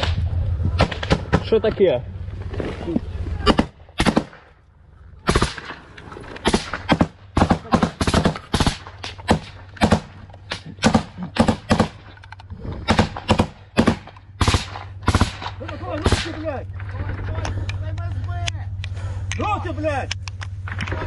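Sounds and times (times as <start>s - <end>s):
gunshots: 0.8s - 1.6s, 3.4s - 4.6s, 5.2s - 5.8s, 6.4s - 12.1s, 12.8s - 16.9s.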